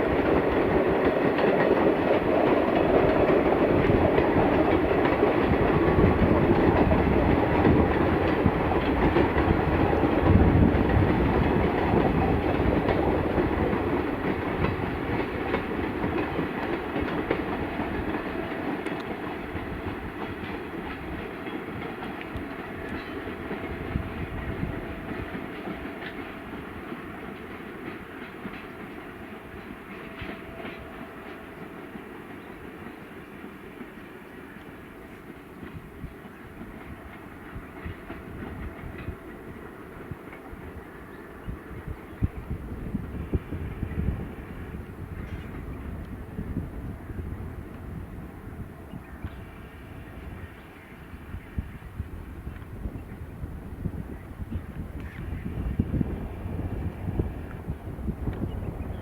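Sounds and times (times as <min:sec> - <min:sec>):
train wheels clickety-clack: 0:00.0 - 0:59.0.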